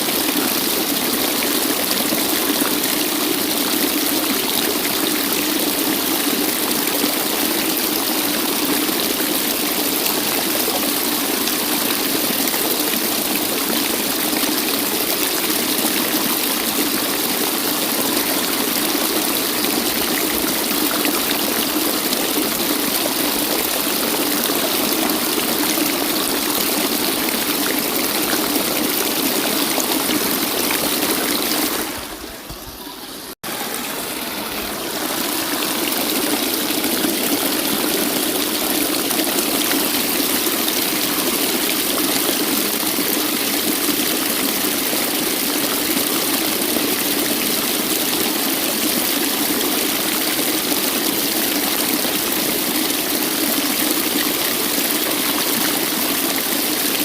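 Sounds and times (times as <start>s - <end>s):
waterfall rushing: 0.0s - 48.6s.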